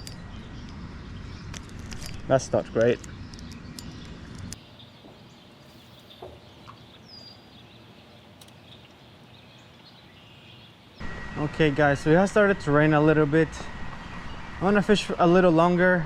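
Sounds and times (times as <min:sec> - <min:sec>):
falling bird chirp: 0:03.0 - 0:11.1
light clicks: 0:08.4 - 0:09.0.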